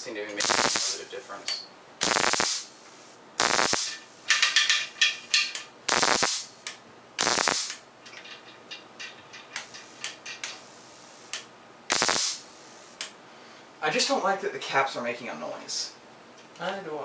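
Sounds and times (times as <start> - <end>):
tesla coil spark crackling: 0.0 - 7.9, 9.6 - 13.2.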